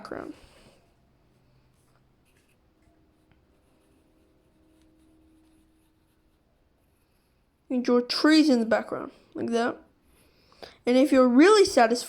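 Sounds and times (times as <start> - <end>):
pen scratching on paper: 3.2 - 7.0.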